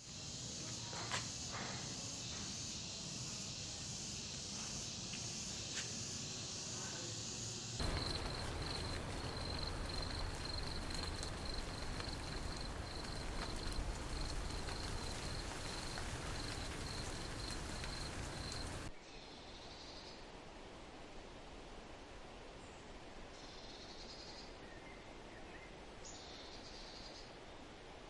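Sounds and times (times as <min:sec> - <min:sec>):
insect chirping: 0:00.0 - 0:18.9.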